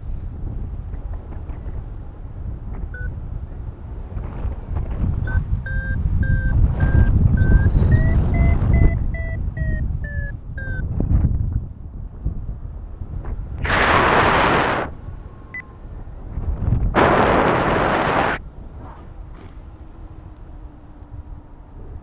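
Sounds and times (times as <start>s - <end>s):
wind on microphone: 0.0s - 22.0s
variometer beeping: 2.7s - 11.2s, 13.6s - 16.2s.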